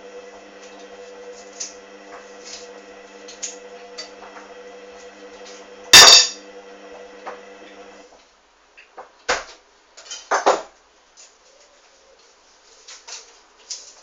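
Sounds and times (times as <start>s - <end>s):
washing machine drum motor humming: 0.0s - 8.1s.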